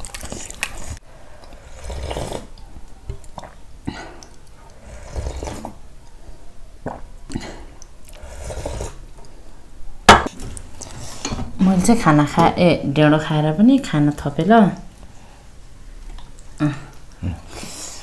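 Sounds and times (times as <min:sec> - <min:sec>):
soup slurping: 0:00.0 - 0:02.6, 0:03.2 - 0:05.8, 0:06.9 - 0:09.1
food chewing: 0:00.0 - 0:05.8.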